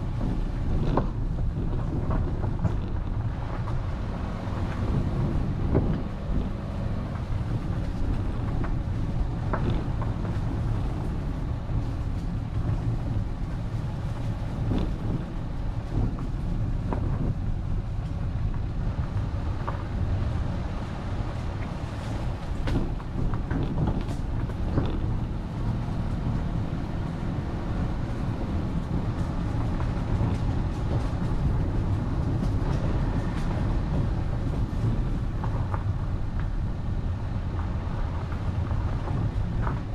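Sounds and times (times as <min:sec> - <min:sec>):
vehicle engine and tyres rumbling: 0:00.0 - 0:39.9.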